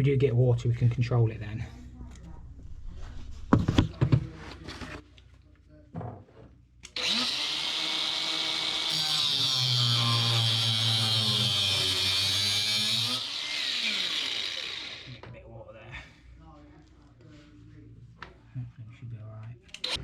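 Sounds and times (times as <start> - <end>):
angle grinder cutting pipe: 6.9 - 15.2, 19.8 - 20.0.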